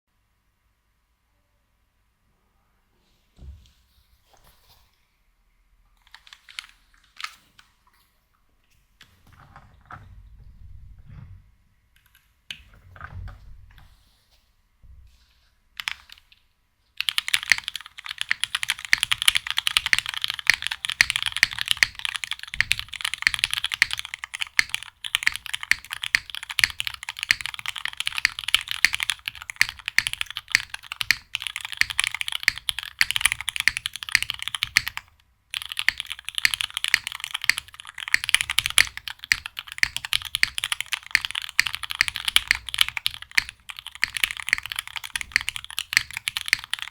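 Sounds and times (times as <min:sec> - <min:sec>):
fast typing on mechanical keyboard: 0:15.8 - 0:16.2, 0:17.0 - 0:46.9.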